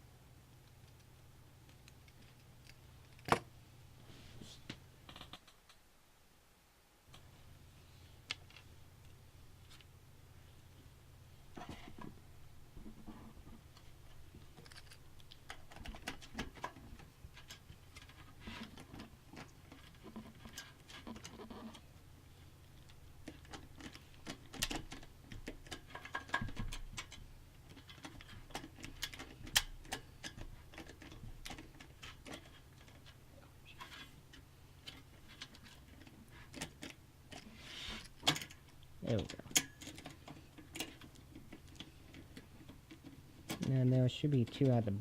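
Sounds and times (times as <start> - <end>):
small parts clicking and tapping: 13.7 - 21.9, 22.6 - 44.8.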